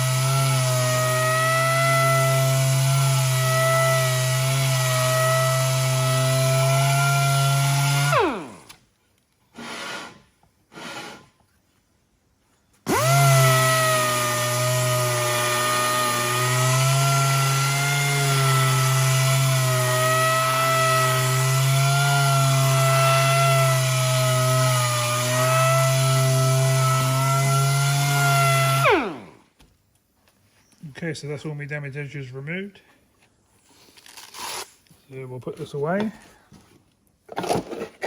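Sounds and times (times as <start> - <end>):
power sander grinding metal wheel: 0.0 - 8.7, 12.9 - 29.4.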